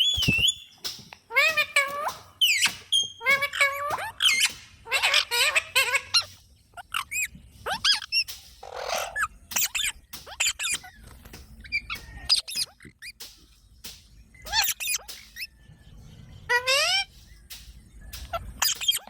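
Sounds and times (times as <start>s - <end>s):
parrot screeching and squawking: 1.3s - 10.9s, 14.5s - 15.5s, 16.5s - 17.1s, 18.2s - 19.0s.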